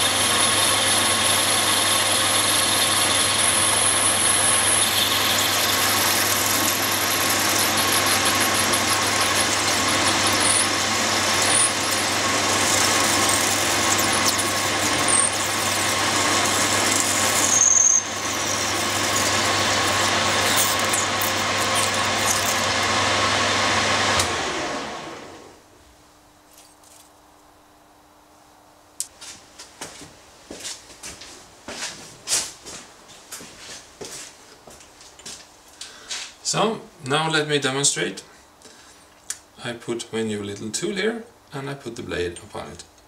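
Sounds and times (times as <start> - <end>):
grinder grinding steel blade: 0.0 - 23.4.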